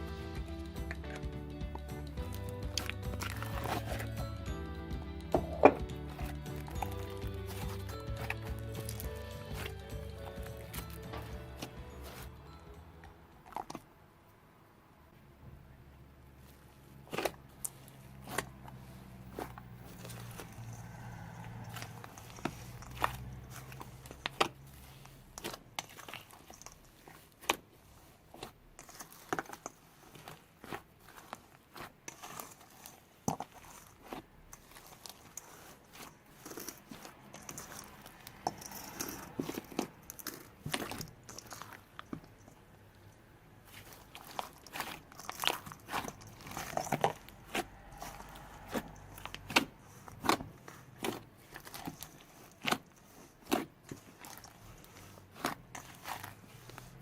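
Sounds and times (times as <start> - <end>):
slime squished by hand: 17.0 - 57.0.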